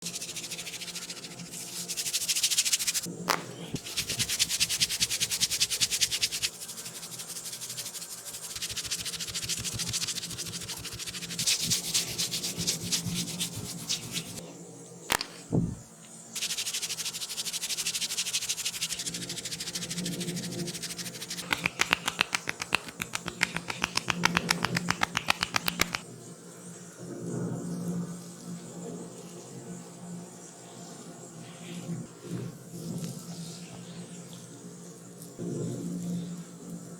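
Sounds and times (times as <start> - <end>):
scratching and crackling: 0.1 - 14.4, 15.1 - 15.8, 16.4 - 26.0
sharp clicks: 21.4 - 26.0.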